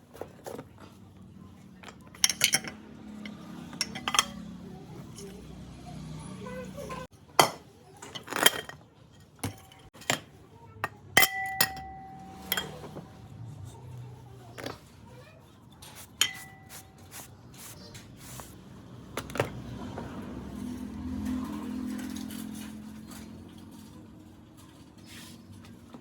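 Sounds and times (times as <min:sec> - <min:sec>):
metal tools clinking: 0:01.8 - 0:05.5, 0:11.2 - 0:13.0, 0:16.2 - 0:17.0.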